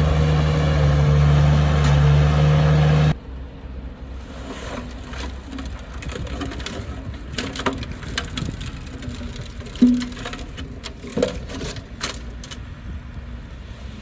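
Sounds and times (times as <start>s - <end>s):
heavy machine engine running: 0.0s - 3.2s.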